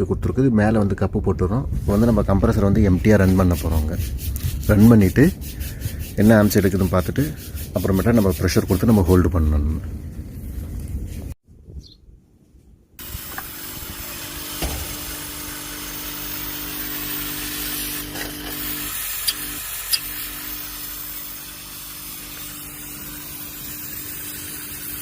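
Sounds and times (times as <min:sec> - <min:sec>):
compressor humming: 0:13.0 - 0:25.0
hiss: 0:16.8 - 0:25.0.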